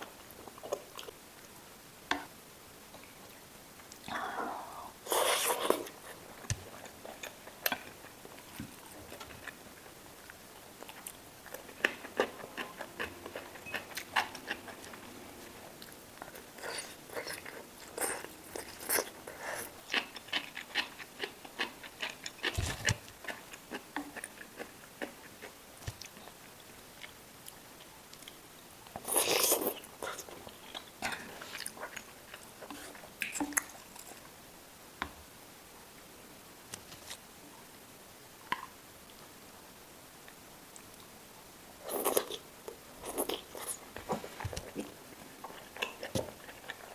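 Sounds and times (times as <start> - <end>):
person chewing crunchy food: 5.1 - 34.2, 41.8 - 46.9.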